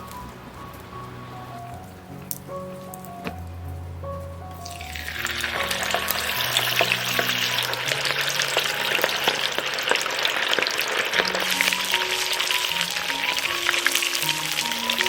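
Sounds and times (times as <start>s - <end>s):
soft background music: 0.0s - 15.0s
food sizzling on charcoal grill: 4.5s - 15.0s.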